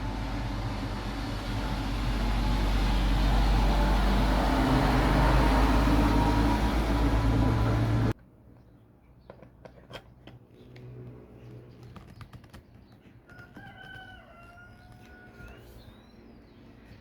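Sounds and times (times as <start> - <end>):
rooster crowing: 13.3 - 15.9.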